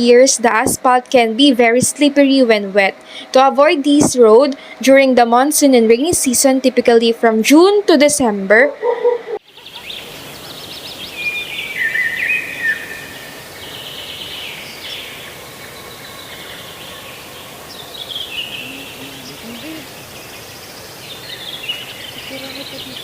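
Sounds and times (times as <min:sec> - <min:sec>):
steady outdoor noise: 0:00.0 - 0:23.0
birds chirping and singing: 0:09.4 - 0:23.0.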